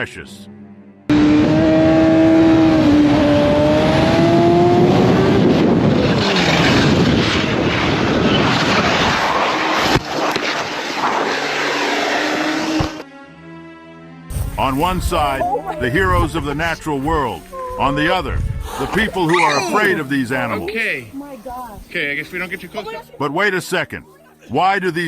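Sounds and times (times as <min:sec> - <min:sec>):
motorcycle engine revving: 0:01.1 - 0:07.5
wind and road noise: 0:01.1 - 0:13.0, 0:14.4 - 0:23.2.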